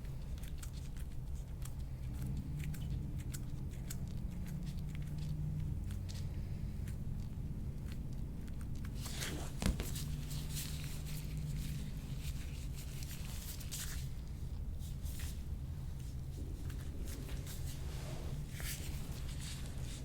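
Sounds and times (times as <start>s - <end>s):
rustling strokes: 8.9s - 20.0s.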